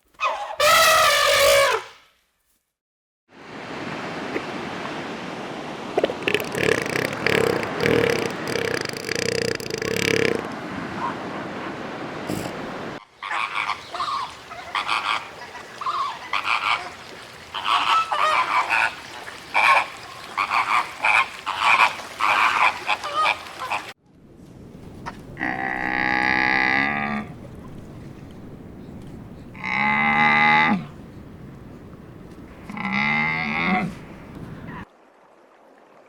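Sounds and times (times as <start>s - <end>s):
long drawn-out animal calls: 6.2s - 10.5s
short animal calls: 6.2s - 10.5s.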